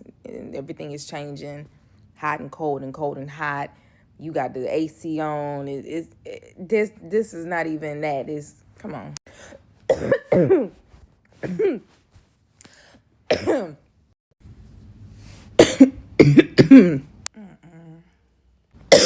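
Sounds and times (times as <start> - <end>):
woman coughing: 9.9 - 10.8, 11.4 - 11.9, 13.3 - 13.8, 15.6 - 17.1.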